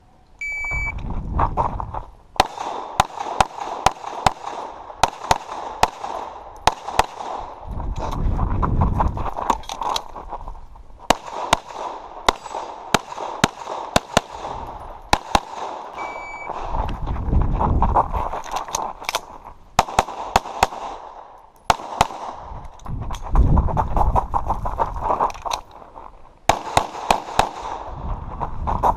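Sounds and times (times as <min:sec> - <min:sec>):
shot timer beep: 0:00.4 - 0:01.0, 0:16.0 - 0:16.5
pistol shots: 0:02.4 - 0:07.6, 0:11.1 - 0:16.6, 0:19.8 - 0:22.5, 0:26.5 - 0:27.9.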